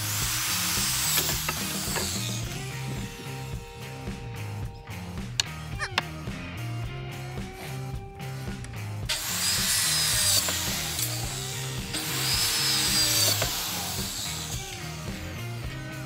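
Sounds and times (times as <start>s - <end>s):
power tool whining on wood: 0.0s - 4.0s, 9.1s - 16.0s
background music with bass line: 0.0s - 16.0s.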